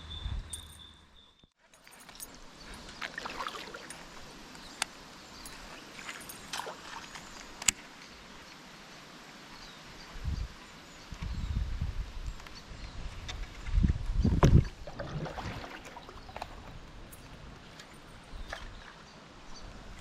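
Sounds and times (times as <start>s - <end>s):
faint outdoor background: 0.0s - 20.0s.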